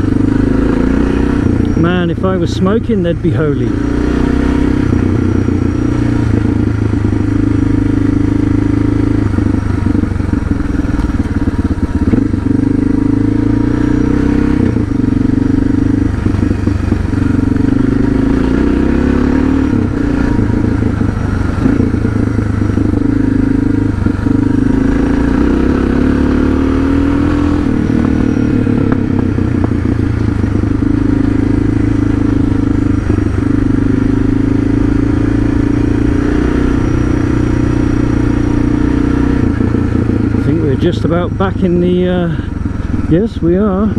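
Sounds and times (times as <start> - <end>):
motorcycle engine running: 0.0 - 43.9.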